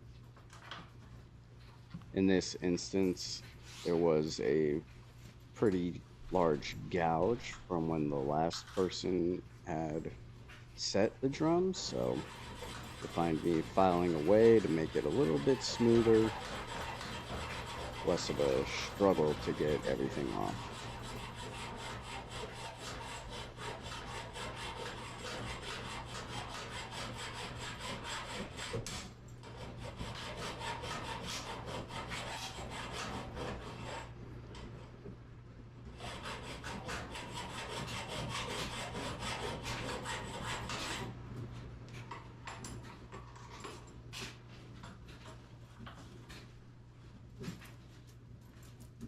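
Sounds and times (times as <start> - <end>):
hand file rasping on steel: 11.5 - 34.1, 36.0 - 41.1.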